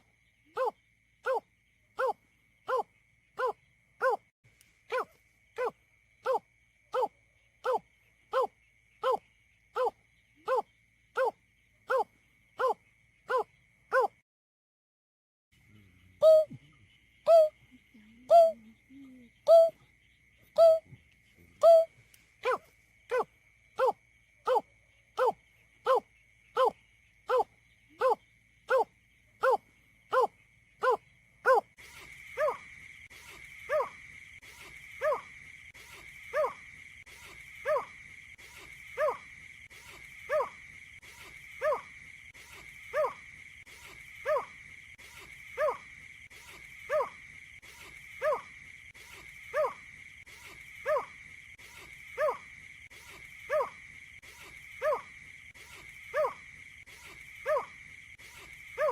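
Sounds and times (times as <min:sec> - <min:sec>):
marsh bird hooting call: 0:16.0 - 0:17.6, 0:18.2 - 0:19.8, 0:20.6 - 0:20.8, 0:21.6 - 0:24.6.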